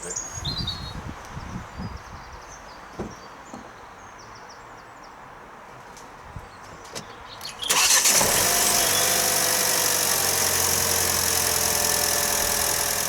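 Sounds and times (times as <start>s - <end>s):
vehicle engine starting and idling: 7.5s - 13.0s.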